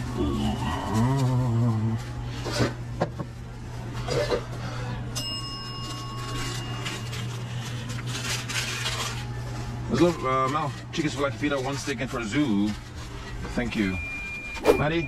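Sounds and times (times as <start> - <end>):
steady low hum: 0.0 - 15.0
metal object struck and ringing: 14.4 - 15.0.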